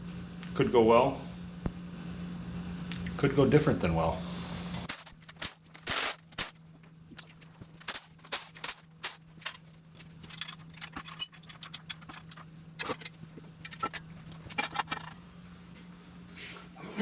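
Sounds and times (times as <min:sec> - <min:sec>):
steady low hum: 0:00.0 - 0:17.0
hand tools clinking on metal: 0:10.0 - 0:15.1.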